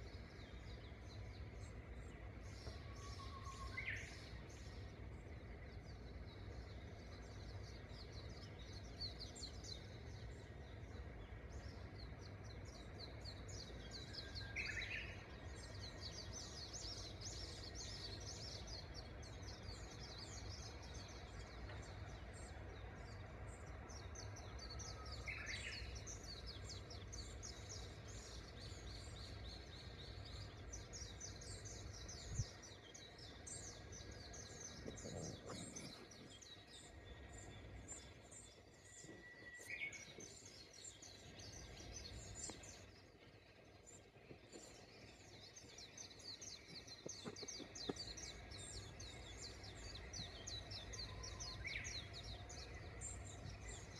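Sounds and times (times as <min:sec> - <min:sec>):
bush warbler singing: 0:00.0 - 0:53.9
small birds chirping: 0:00.0 - 0:53.9
low steady rumble: 0:26.0 - 0:53.9.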